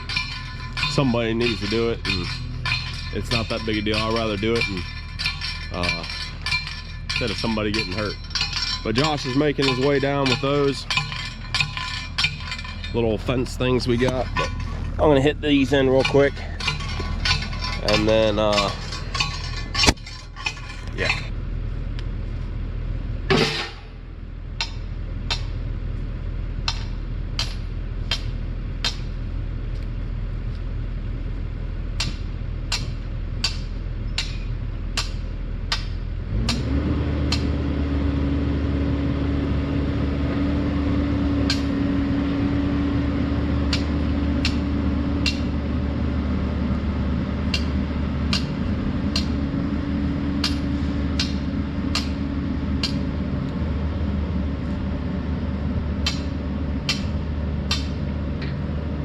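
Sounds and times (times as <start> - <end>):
post driver striking metal posts: 0.0 - 21.3, 23.3 - 24.0, 24.6 - 25.6, 26.6 - 29.2, 32.0 - 37.7, 41.2 - 42.0, 43.6 - 45.6, 47.5 - 53.2, 56.0 - 58.6
engine running: 0.0 - 59.0.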